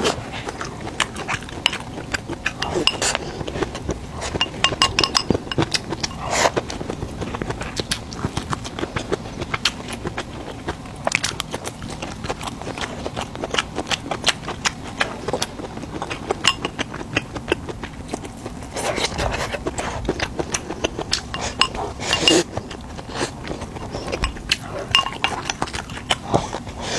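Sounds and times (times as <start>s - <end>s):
utensils knocking on board and dishes: 4.3s - 5.7s.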